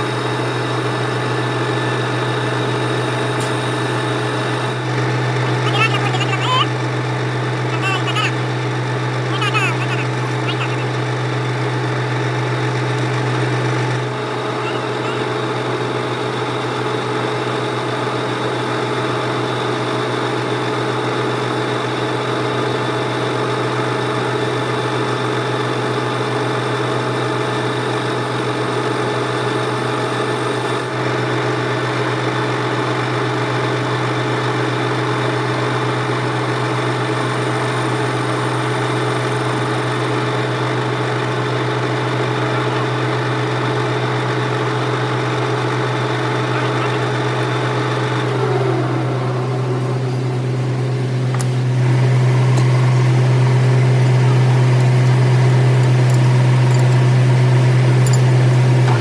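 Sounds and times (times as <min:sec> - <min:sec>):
workshop machine humming: 0:00.0 - 0:24.0, 0:30.3 - 0:59.0.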